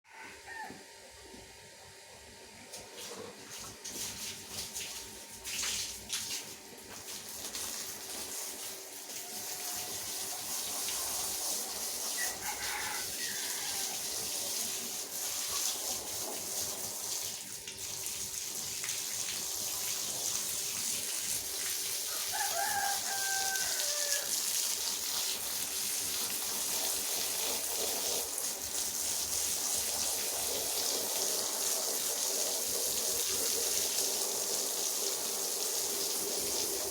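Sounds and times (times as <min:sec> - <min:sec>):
rooster crowing: 0:00.1 - 0:00.9, 0:12.2 - 0:14.3, 0:22.1 - 0:24.4.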